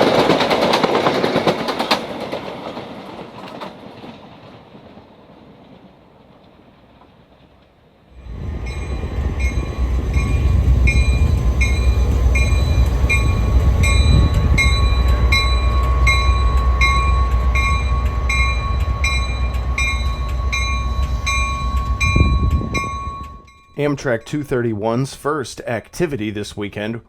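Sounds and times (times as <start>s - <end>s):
diesel locomotive rumbling: 0.0s - 27.0s
steady high tone: 8.2s - 26.6s
locomotive bell ringing: 8.3s - 26.6s.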